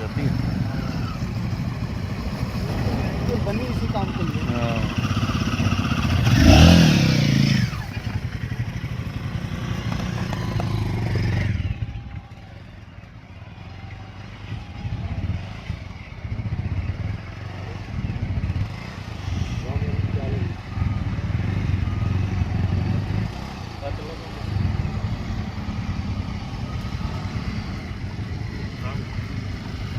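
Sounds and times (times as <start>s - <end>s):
motorcycle engine revving: 0.0s - 29.9s.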